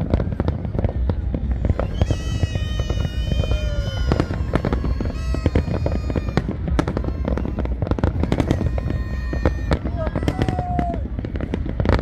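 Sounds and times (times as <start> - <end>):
deep rumble of launches: 0.0 - 12.0
fireworks bangs and crackles: 0.0 - 12.0.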